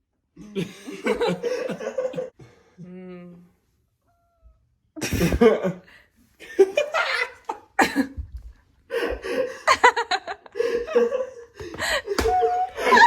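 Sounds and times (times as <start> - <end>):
people laughing: 0.5 - 2.3, 6.4 - 8.1, 8.9 - 13.0.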